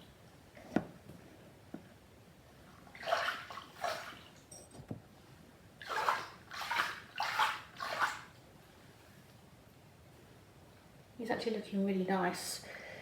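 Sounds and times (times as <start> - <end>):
water sloshing in basin: 2.7 - 4.6, 5.8 - 8.4.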